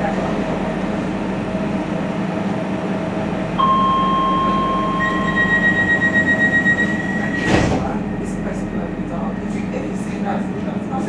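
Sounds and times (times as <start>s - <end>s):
train electrical hum: 0.0s - 11.0s
electronic tone: 3.6s - 9.5s
higher electronic tone: 3.6s - 9.8s.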